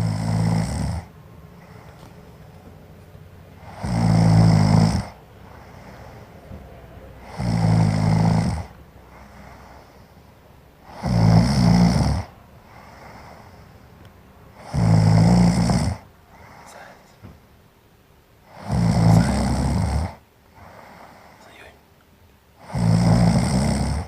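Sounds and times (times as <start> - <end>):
woman snoring loudly: 0.0 - 1.1, 3.6 - 6.0, 7.2 - 8.7, 10.9 - 13.4, 14.6 - 16.0, 18.5 - 21.3, 22.6 - 24.0
quiet breaths: 0.0 - 17.6, 18.4 - 24.0.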